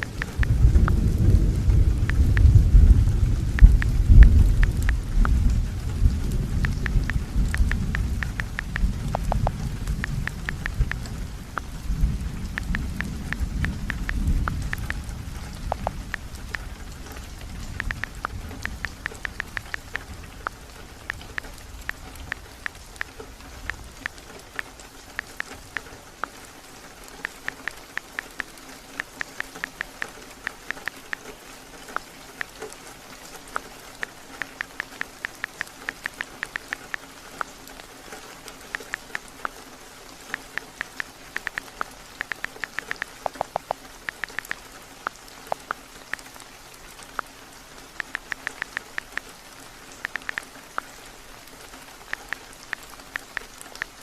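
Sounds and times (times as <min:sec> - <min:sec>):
thunder rumbling: 0:00.0 - 0:25.8
heavy rain on a roof: 0:00.0 - 0:54.0
short sharp ticks: 0:06.6 - 0:11.7.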